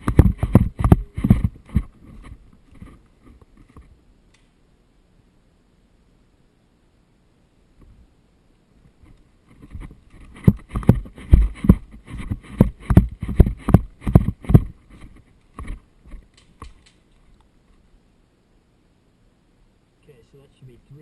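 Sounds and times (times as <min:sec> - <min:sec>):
sharp thuds: 0:00.0 - 0:03.0, 0:09.5 - 0:16.7.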